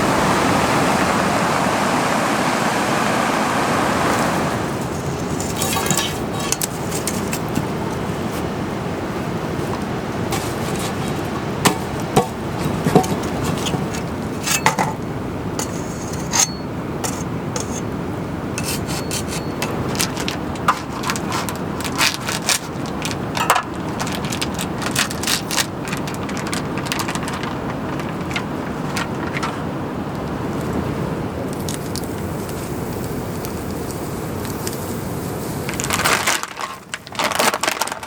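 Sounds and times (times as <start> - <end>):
steady rain: 0.0 - 14.4, 19.8 - 38.0
objects being handled: 4.8 - 8.5, 9.6 - 15.0, 18.6 - 29.7, 35.6 - 38.0.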